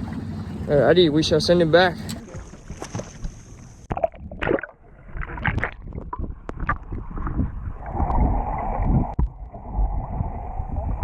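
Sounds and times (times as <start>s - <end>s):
rush of water: 0.0s - 3.9s
water splashing and sloshing: 0.0s - 11.0s.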